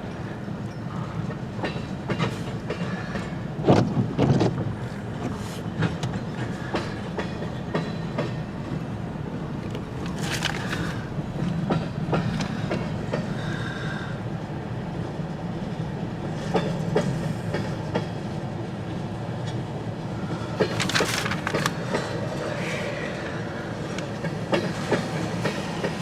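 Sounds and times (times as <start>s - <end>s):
freight train cars rumbling: 0.0s - 26.0s
wheel clicks over rail joints: 20.6s - 22.2s.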